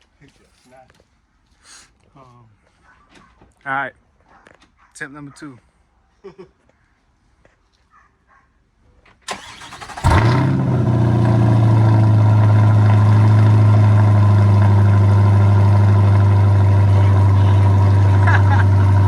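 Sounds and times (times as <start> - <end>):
starter motor cranking: 9.3 - 11.4
car engine idling: 9.3 - 19.0.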